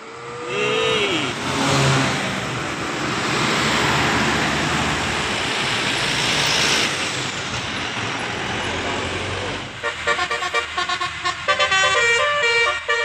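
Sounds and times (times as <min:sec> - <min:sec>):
vehicle passing close: 0:00.0 - 0:09.8
road traffic rushing: 0:00.0 - 0:13.0.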